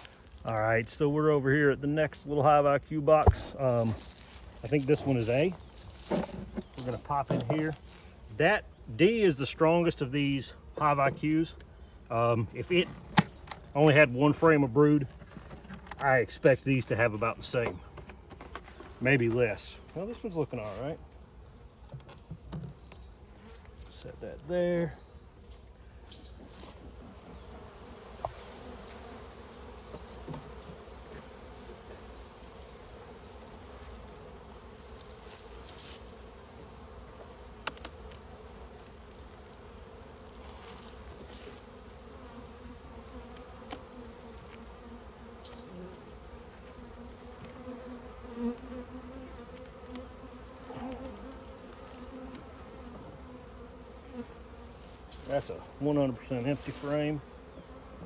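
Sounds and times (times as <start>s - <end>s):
honey bees buzzing: 0.0s - 58.0s.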